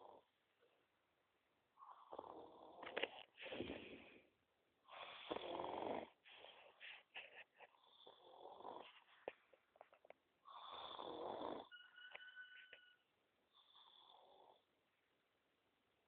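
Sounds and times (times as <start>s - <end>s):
snorts and breath noises: 1.8s - 4.3s, 4.9s - 9.5s
man snoring: 5.1s - 6.2s, 10.5s - 11.7s.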